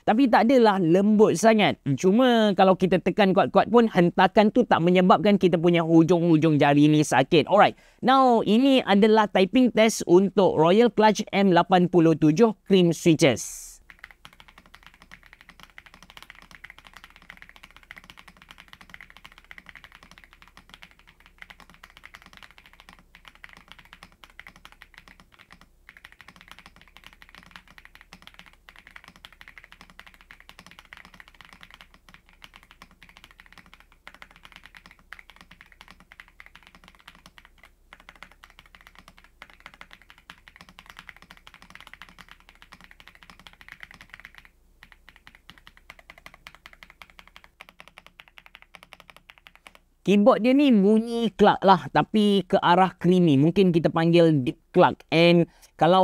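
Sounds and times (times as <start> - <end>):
fast typing on mechanical keyboard: 13.8 - 49.8.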